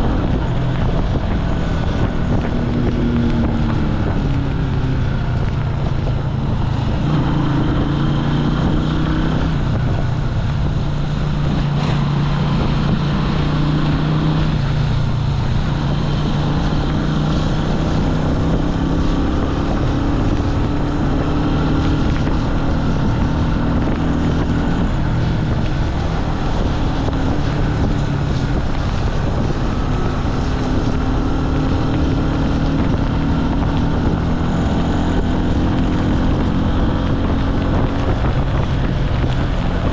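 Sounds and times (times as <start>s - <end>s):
motorcycle engine running: 0.0s - 39.9s
wind on microphone: 0.0s - 39.9s.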